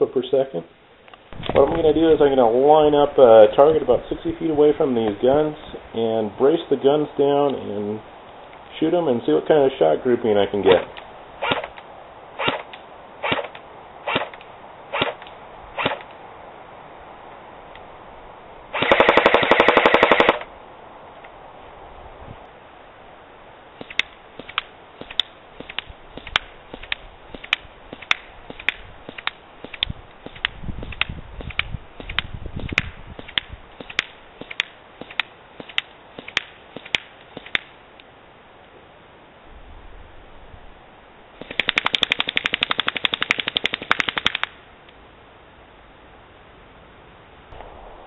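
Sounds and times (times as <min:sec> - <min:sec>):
airsoft gun firing clicks: 0:10.7 - 0:16.2, 0:18.8 - 0:20.5, 0:23.8 - 0:37.7, 0:41.4 - 0:44.6
airsoft gun automatic burst: 0:12.4 - 0:13.5, 0:18.7 - 0:20.5, 0:41.4 - 0:44.5.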